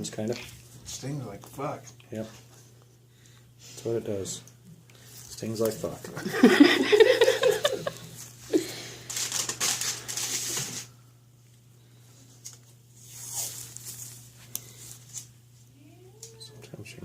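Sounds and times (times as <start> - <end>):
steady low hum: 0.0 - 17.0
rustling and crinkling: 9.0 - 10.9.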